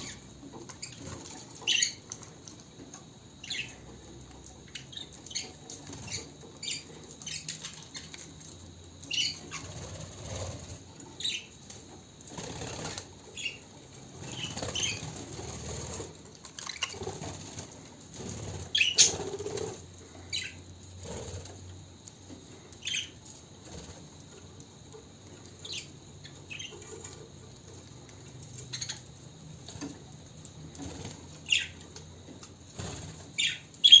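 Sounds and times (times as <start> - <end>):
budgies chirping: 0.0 - 2.2, 3.4 - 3.8, 4.6 - 8.3, 9.0 - 11.6, 12.5 - 13.6, 14.2 - 17.4, 18.3 - 20.6, 22.8 - 23.2, 25.6 - 27.2, 28.5 - 29.1, 31.4 - 31.8, 33.3 - 34.0
wing flapping and rustling: 5.5 - 20.2, 26.6 - 33.6.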